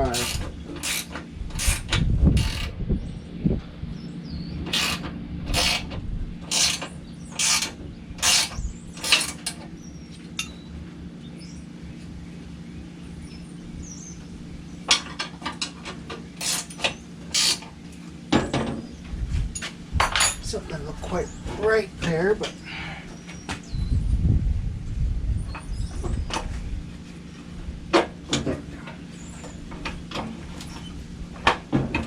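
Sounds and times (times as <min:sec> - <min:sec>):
ratchet wrench clicking: 0:00.0 - 0:02.7, 0:04.7 - 0:05.9, 0:06.5 - 0:06.8, 0:07.4 - 0:09.6, 0:16.4 - 0:17.6
steady low hum: 0:00.0 - 0:31.8.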